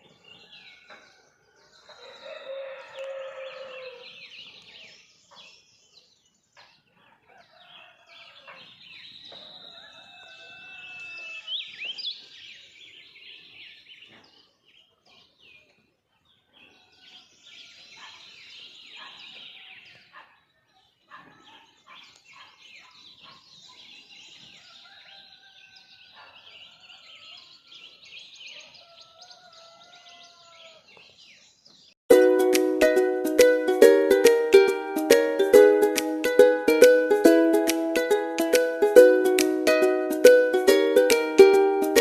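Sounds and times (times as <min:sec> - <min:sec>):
birds chirping and trilling: 0:00.0 - 0:32.0.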